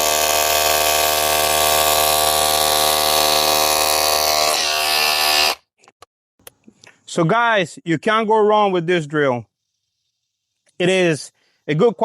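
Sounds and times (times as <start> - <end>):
rotary hammer drilling into wood: 0.0 - 5.7.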